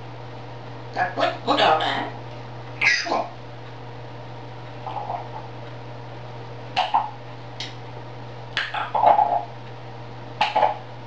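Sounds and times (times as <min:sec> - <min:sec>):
steady low hum: 0:00.0 - 0:11.0
parrot squawking and clicking: 0:02.8 - 0:03.3, 0:06.7 - 0:07.2, 0:08.5 - 0:09.5, 0:10.4 - 0:10.8.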